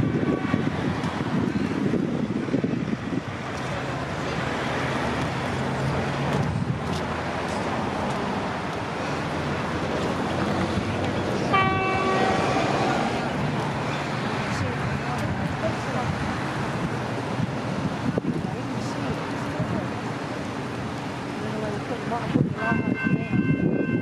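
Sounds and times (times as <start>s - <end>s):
train horn blast: 0.0s - 0.7s, 11.5s - 13.1s.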